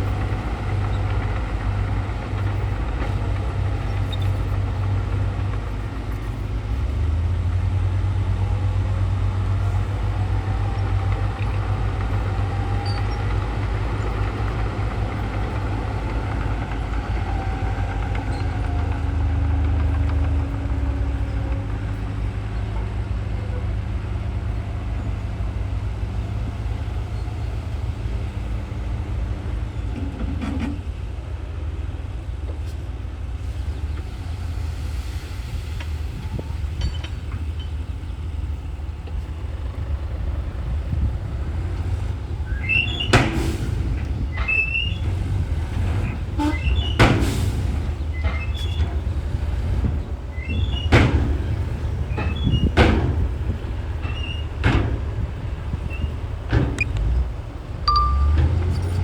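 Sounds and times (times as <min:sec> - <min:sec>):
metallic clanks and squeals: 0:00.0 - 0:07.0, 0:09.6 - 0:19.1, 0:35.9 - 0:38.1, 0:42.0 - 0:59.0
bulldozer diesel engine: 0:00.0 - 0:59.0.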